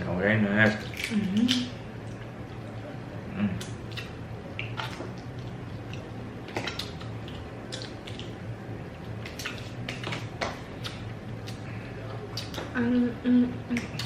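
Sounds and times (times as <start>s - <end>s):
low steady hum: 0.0s - 14.0s
wet chewing and smacking: 3.6s - 12.8s.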